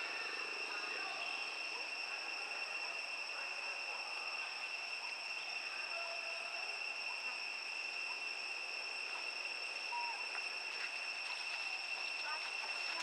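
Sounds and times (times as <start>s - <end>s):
high-pitched insect drone: 0.0s - 13.0s
faint short whistles: 9.9s - 10.3s.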